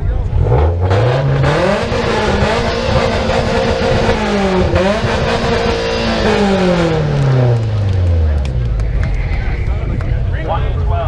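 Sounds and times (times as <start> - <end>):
car engine revving loudly: 0.0 - 8.8.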